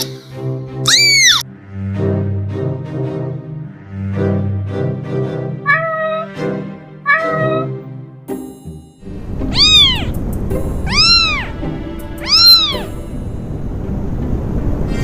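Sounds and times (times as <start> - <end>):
background music: 0.0 - 15.0
cat meowing: 0.9 - 1.4, 5.7 - 6.4, 7.1 - 7.8, 9.3 - 10.2, 10.8 - 11.6, 12.2 - 13.0.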